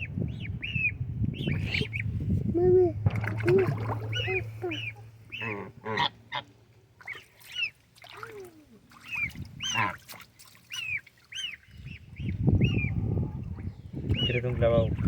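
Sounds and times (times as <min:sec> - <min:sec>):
geese honking: 0:04.1 - 0:06.5.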